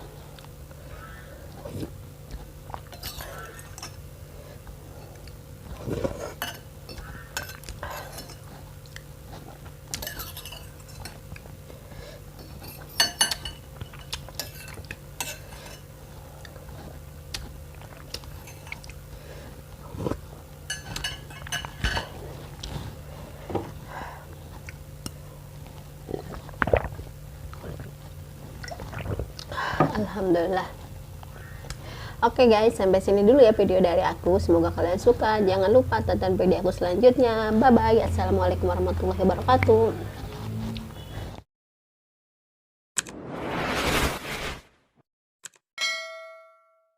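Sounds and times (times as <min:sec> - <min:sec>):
steady low hum: 0:00.0 - 0:41.4
chewing: 0:01.4 - 0:13.0, 0:13.8 - 0:23.4, 0:24.3 - 0:29.6, 0:39.5 - 0:41.4
utensils clinking against a bowl: 0:02.9 - 0:04.0, 0:06.4 - 0:08.5, 0:09.9 - 0:11.2, 0:12.4 - 0:15.9, 0:18.3 - 0:18.9, 0:20.7 - 0:22.2.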